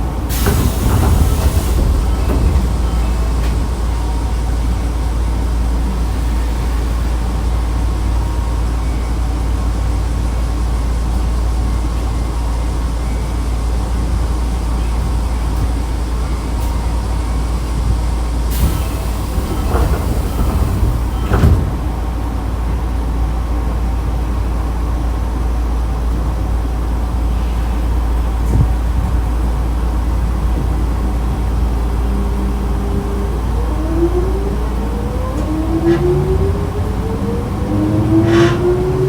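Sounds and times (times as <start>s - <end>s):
train doors hissing and knocking: 0.0s - 23.1s, 25.7s - 39.0s
train equipment hum: 0.0s - 39.0s
traction motor whine: 32.0s - 39.0s.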